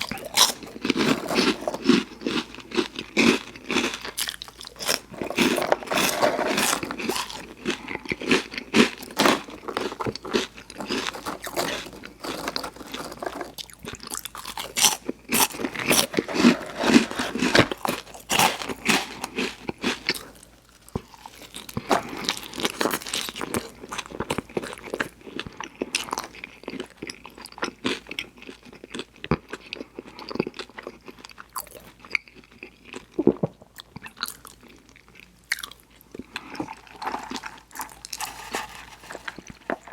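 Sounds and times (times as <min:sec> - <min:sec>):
person crunching and chewing: 0:00.0 - 0:39.9.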